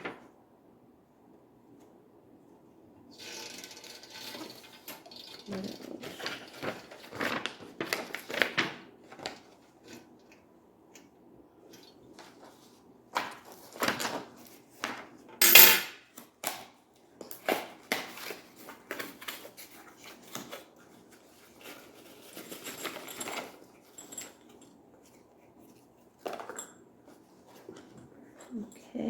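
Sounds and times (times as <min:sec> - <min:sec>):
knocks and clinks of hard fittings: 0:15.4 - 0:16.0.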